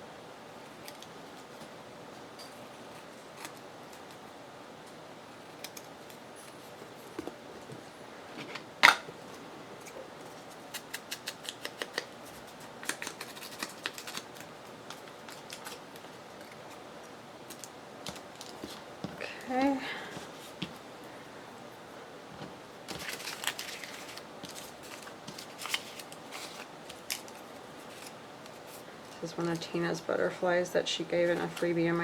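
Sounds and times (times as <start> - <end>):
scissors snipping paper: 5.4 - 7.2, 10.5 - 16.8.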